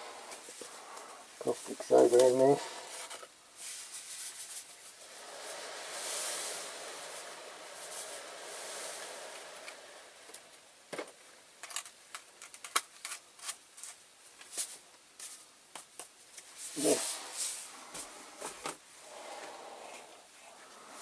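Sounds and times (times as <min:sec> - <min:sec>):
rushing hiss of pouring: 0:04.9 - 0:10.9.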